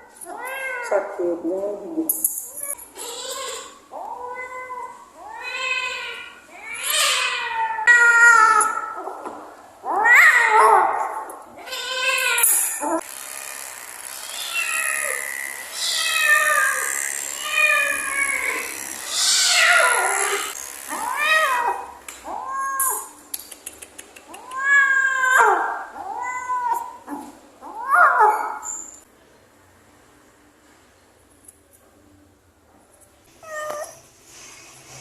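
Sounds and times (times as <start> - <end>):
cat meowing and yowling: 2.6 - 9.2, 9.8 - 13.0, 14.3 - 15.2, 15.8 - 23.2, 24.4 - 28.7, 33.4 - 34.0.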